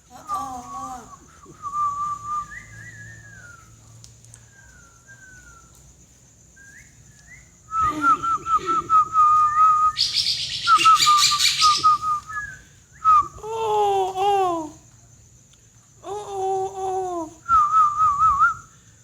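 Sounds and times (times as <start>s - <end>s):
starling whistling and clicking: 0.6s - 13.4s.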